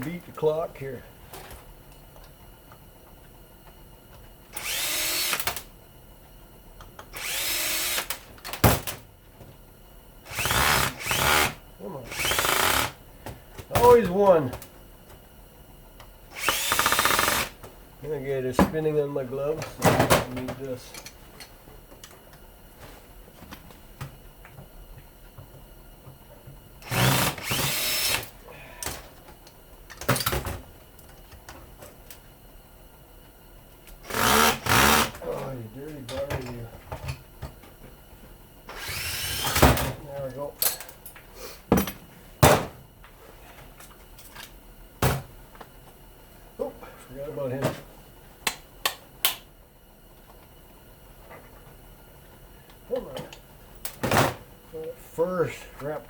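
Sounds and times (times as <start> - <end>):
power drill whine: 4.6 - 5.7, 7.1 - 8.2, 10.3 - 13.0, 16.3 - 17.6, 26.8 - 28.4, 34.0 - 35.2, 38.7 - 39.8.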